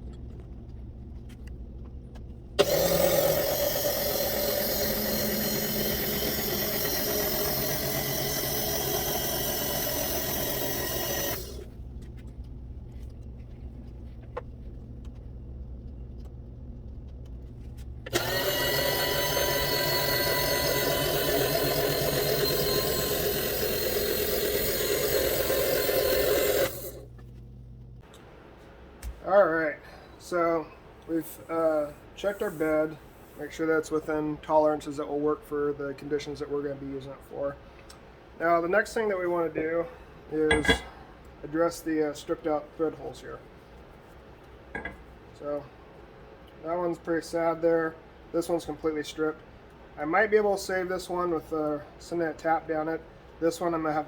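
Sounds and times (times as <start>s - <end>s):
electric power tool running: 2.6s - 11.7s, 18.0s - 27.1s.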